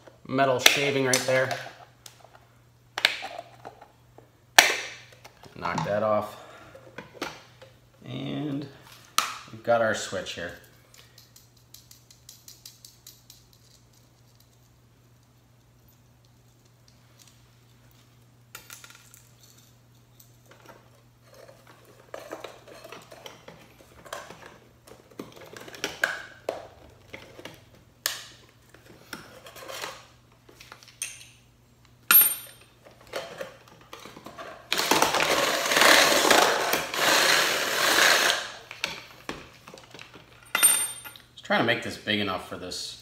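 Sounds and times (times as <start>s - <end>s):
metal parts being handled: 29.4s - 31.5s, 39.7s - 41.3s
power drill drilling metal: 35.4s - 38.5s.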